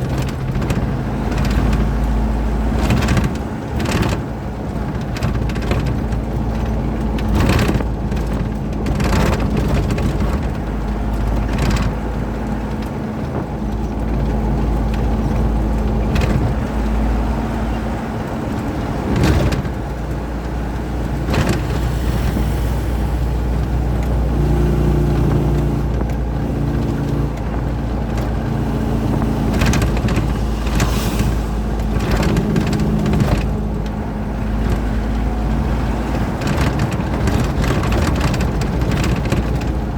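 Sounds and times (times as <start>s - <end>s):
road rumble: 0.0s - 39.9s
short knocks and rattles: 0.0s - 39.9s
truck engine drone: 0.0s - 39.9s.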